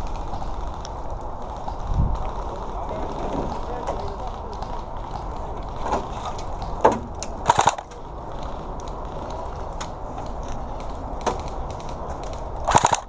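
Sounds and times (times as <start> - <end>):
airsoft guns firing: 6.9 - 8.1, 12.6 - 13.0.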